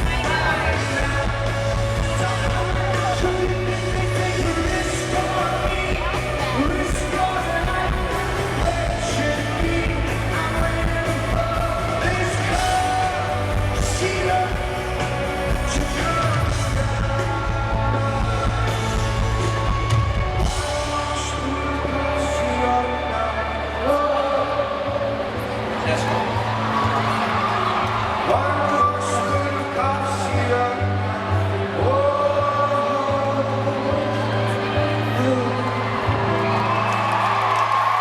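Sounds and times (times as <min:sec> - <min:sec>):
person singing: 0:00.0 - 0:26.2, 0:28.2 - 0:36.7
rock band playing live: 0:00.0 - 0:36.8.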